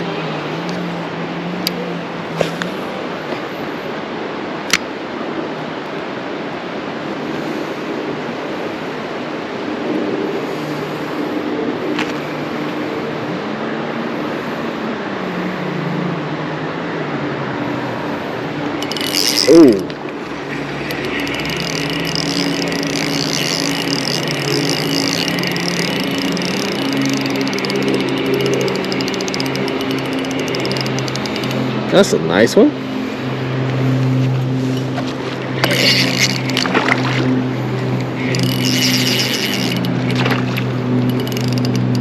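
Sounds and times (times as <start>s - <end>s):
flowing stream water: 17.8s - 32.0s, 34.7s - 42.0s
fishing reel whirring and clicking: 18.7s - 32.1s, 35.6s - 37.0s, 37.9s - 42.0s.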